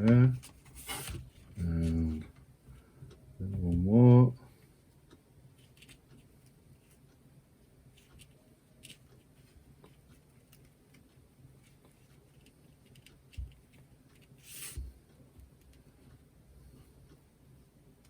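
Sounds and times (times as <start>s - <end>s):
paper rustle: 0.4s - 2.0s
paper materials ticking and tapping: 7.8s - 16.2s.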